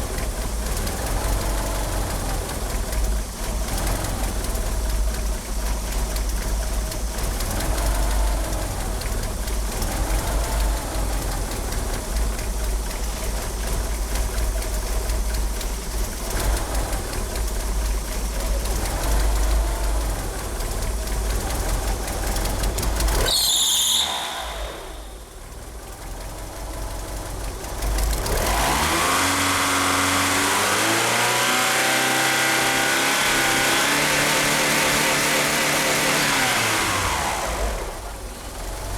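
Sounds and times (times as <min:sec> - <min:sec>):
car engine idling roughly: 0:00.0 - 0:38.9
high belt squeal: 0:23.2 - 0:25.5.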